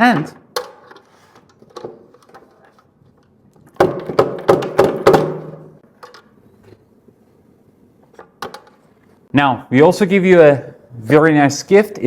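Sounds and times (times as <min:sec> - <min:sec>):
hard knocks and clacks: 0:03.8 - 0:05.8.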